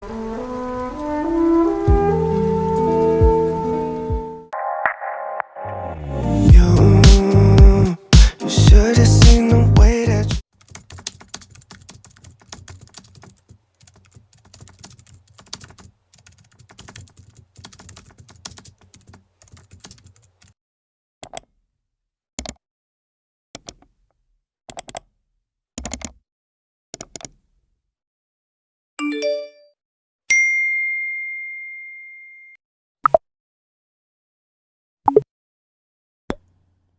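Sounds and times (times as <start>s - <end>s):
music: 0.3s - 10.4s
typing on computer keyboard: 10.6s - 20.6s, 24.7s - 25.0s, 25.8s - 26.2s, 27.0s - 27.4s.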